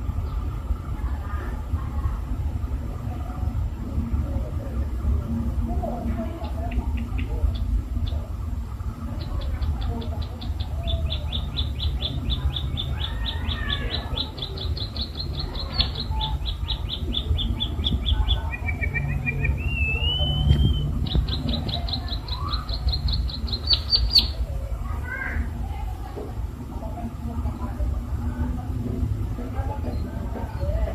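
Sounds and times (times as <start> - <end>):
bird singing sharp chip notes: 9.2 - 24.4
bird trill and rising whistle: 10.6 - 24.4.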